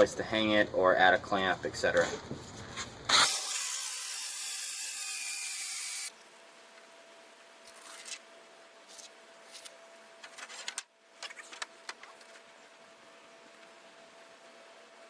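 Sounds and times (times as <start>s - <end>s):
hole saw cutting plywood: 3.1s - 6.1s.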